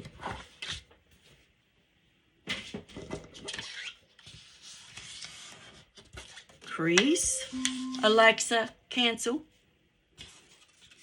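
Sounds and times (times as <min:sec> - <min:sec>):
paper rustling: 0:10.2 - 0:11.0.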